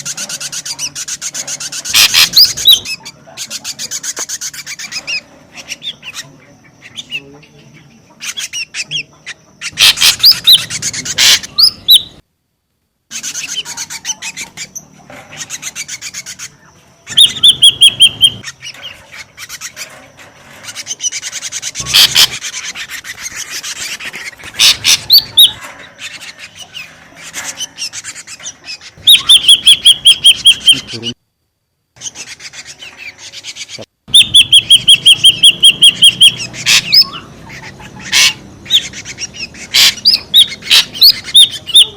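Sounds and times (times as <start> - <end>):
bird harsh rasping chatter: 0.0 - 12.2, 13.1 - 31.2, 32.0 - 41.9
bird whistled notes: 29.0 - 31.0.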